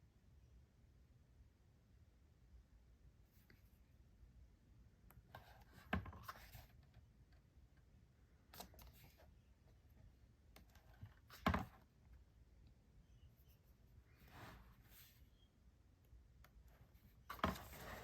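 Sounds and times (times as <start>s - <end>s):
faint handling noise: 16.1s - 18.0s.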